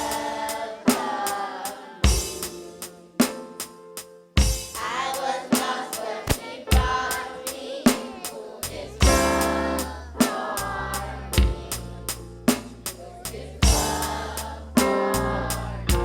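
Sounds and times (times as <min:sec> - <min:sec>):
drum kit beat: 0:00.0 - 0:16.0
person singing: 0:04.8 - 0:11.8
bass line: 0:08.7 - 0:16.0.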